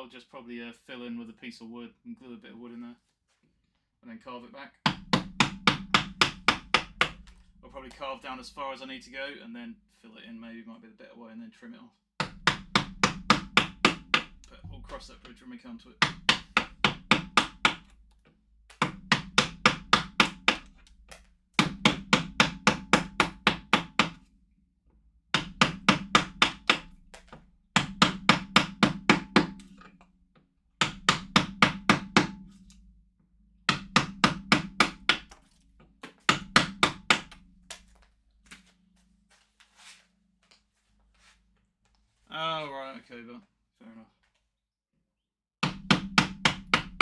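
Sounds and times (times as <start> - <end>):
mallet striking chisel: 4.9 - 8.2, 12.2 - 15.4, 16.0 - 18.0, 18.7 - 24.3, 25.3 - 30.1, 30.8 - 32.8, 33.7 - 38.6, 45.6 - 47.0.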